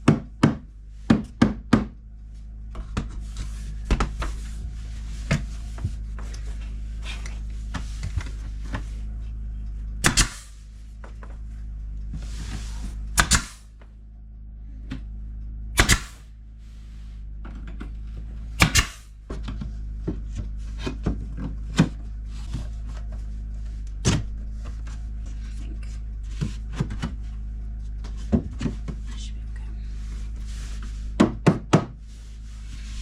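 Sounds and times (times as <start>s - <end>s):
low hum: 1.7s - 31.3s
wooden knocks of nailing boards: 10.0s - 10.5s, 13.2s - 13.6s, 15.8s - 16.2s, 18.6s - 19.0s.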